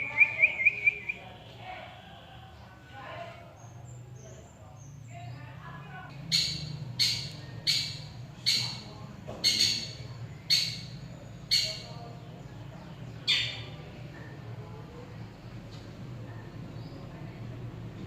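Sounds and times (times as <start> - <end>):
bird giving harsh calls: 6.2 - 12.0.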